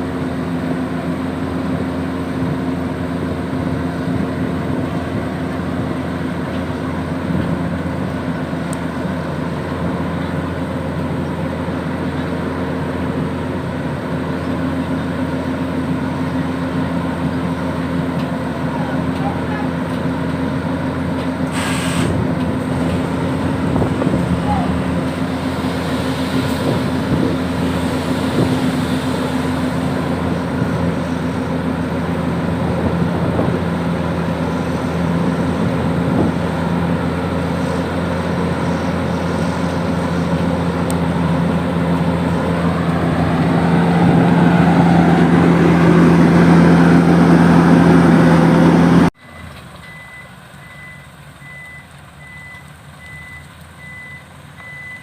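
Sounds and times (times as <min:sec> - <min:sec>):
diesel truck engine running: 0:00.0 - 0:55.0
reversing alarm beeping: 0:49.2 - 0:55.0.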